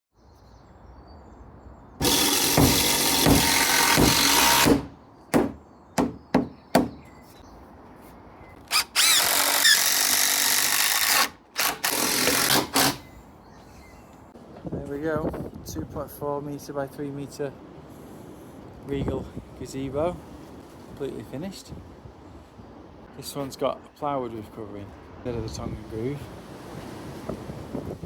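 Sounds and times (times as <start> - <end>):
power drill on timber: 2.0 - 6.2, 8.6 - 13.0.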